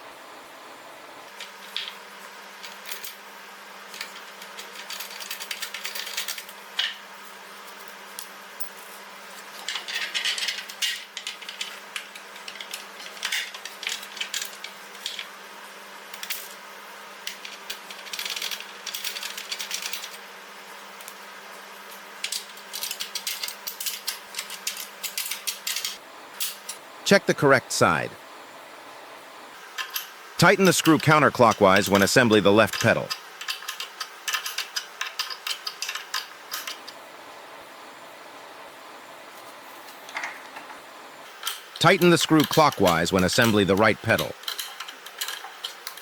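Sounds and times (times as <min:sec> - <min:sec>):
metal bolts clicking and rattling: 0:32.7 - 0:36.8.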